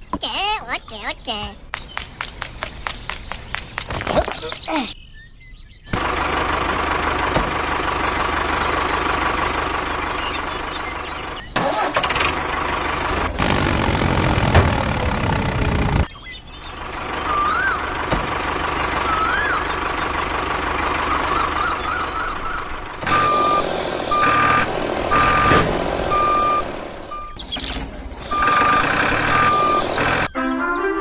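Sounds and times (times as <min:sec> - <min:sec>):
reversing beep: 0:23.1 - 0:27.4, 0:28.3 - 0:30.3.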